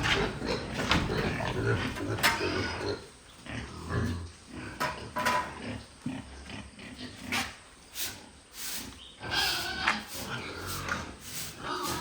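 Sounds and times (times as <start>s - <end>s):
pigs grunting: 0.0s - 7.7s, 9.2s - 12.0s.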